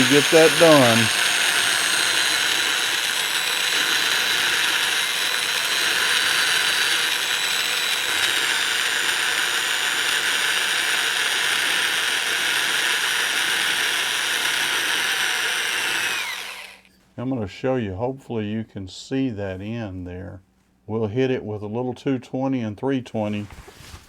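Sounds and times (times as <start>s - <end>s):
electric drill sanding wood: 0.0s - 16.9s.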